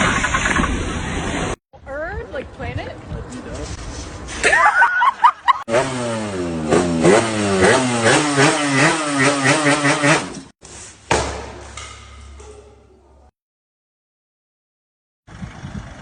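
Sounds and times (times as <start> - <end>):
engine revving in blips: 5.7 - 10.5
sudden thump: 11.1 - 11.7.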